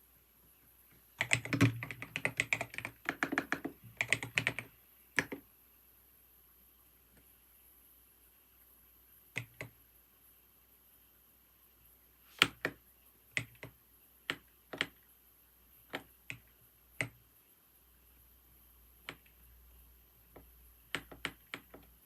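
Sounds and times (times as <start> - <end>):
keyboard keys clicking: 1.2 - 5.4, 20.3 - 21.9.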